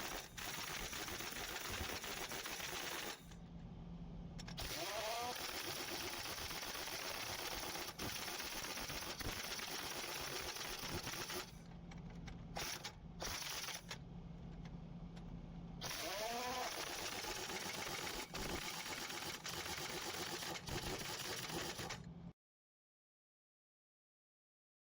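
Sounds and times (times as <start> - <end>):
drill clattering: 15.8 - 18.6.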